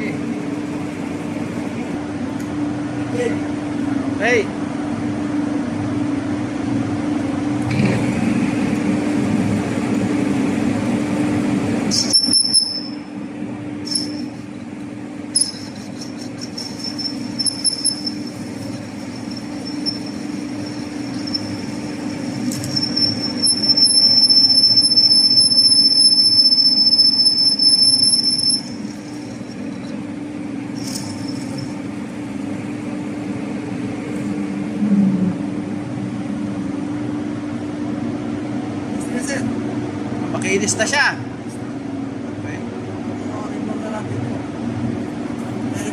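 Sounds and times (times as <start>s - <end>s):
lathe tool squealing on metal: 11.9s - 13.0s, 15.4s - 30.0s
lathe humming: 15.4s - 33.4s.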